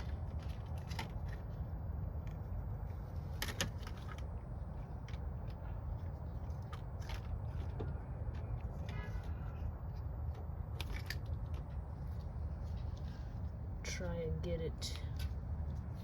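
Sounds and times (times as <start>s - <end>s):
clicks and rustles of small parts: 0.0s - 9.3s, 9.9s - 13.1s
low rumble: 0.0s - 16.0s.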